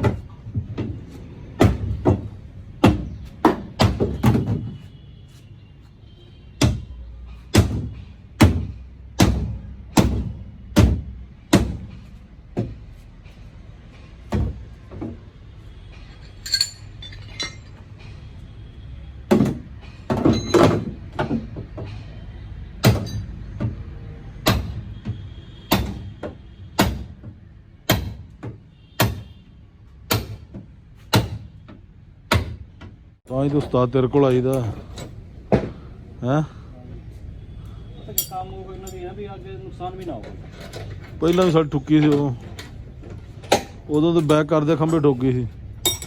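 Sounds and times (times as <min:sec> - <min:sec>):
metallic clinks: 0:16.0 - 0:18.0, 0:38.1 - 0:39.1.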